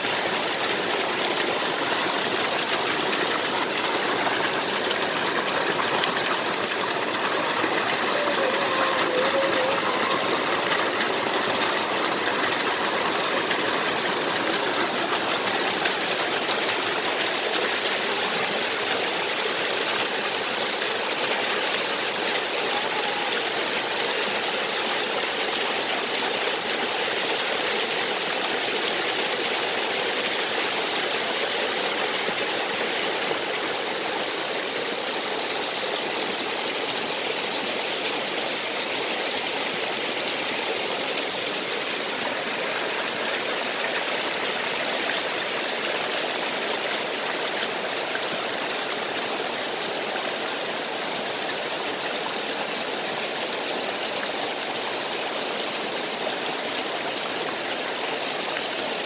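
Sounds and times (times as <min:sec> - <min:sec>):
stream water over small waterfall: 0:00.0 - 0:59.0.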